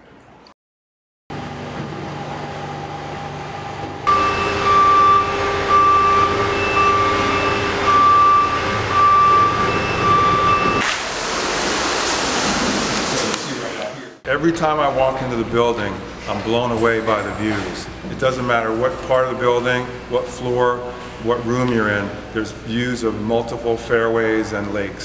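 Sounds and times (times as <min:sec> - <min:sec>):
construction machinery running: 0:01.3 - 0:14.1
electronic warning beeper: 0:04.1 - 0:10.8
loud even hiss: 0:10.8 - 0:13.9.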